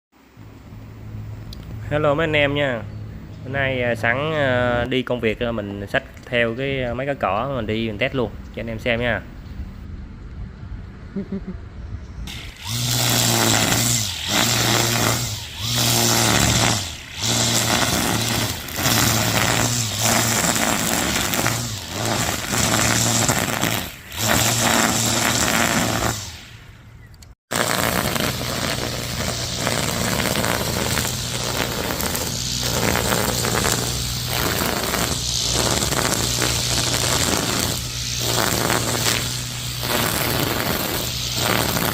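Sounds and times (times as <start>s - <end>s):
electric motor humming and hissing: 12.3s - 26.7s, 27.5s - 41.9s.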